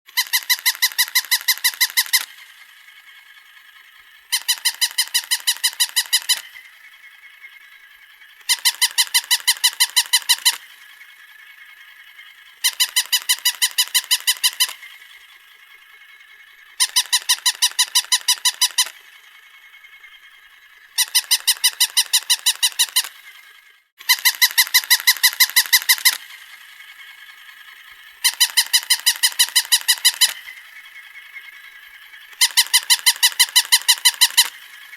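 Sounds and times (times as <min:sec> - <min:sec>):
toy dog electronic barks: 0:00.2 - 0:02.5, 0:04.3 - 0:06.6, 0:08.5 - 0:10.7, 0:12.6 - 0:14.9, 0:16.8 - 0:19.0, 0:21.0 - 0:23.1, 0:24.0 - 0:26.3, 0:28.2 - 0:30.5, 0:32.4 - 0:34.6.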